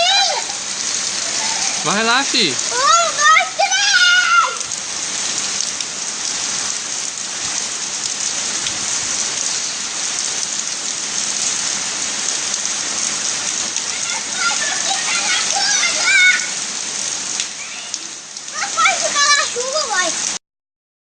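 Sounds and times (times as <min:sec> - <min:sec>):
steady rain pattering: 0:00.0 - 0:20.4.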